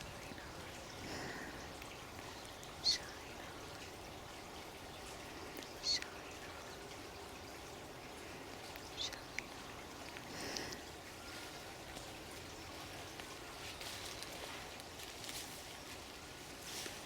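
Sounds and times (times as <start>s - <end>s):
water trickling: 0.0s - 17.0s.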